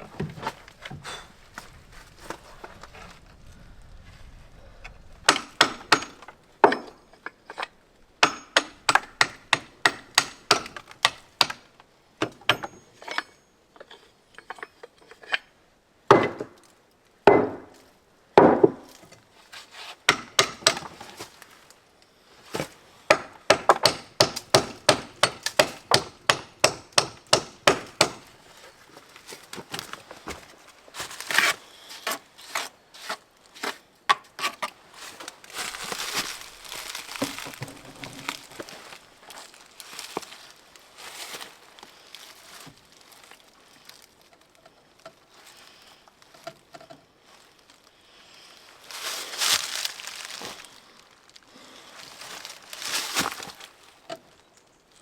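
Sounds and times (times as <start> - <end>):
sharp wood-like knocks: 17.3 - 17.7, 18.4 - 18.9.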